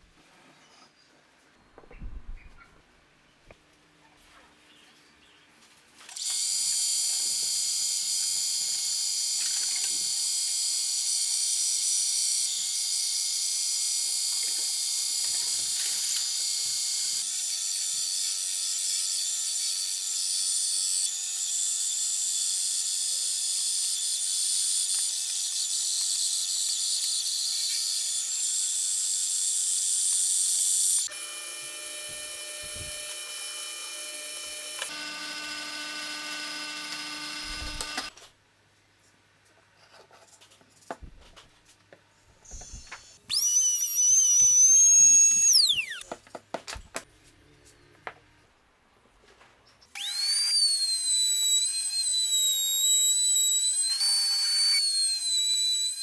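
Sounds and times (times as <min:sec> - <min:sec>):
power tool motor whine: 0:06.2 - 0:17.8, 0:25.0 - 0:38.1, 0:42.5 - 0:46.1, 0:50.0 - 0:56.0.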